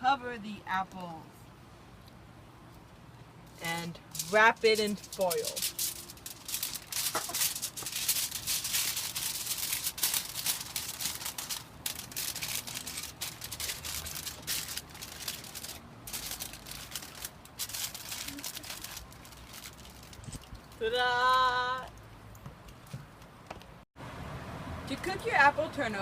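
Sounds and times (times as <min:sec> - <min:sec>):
aluminium foil crinkling: 0:03.5 - 0:20.9.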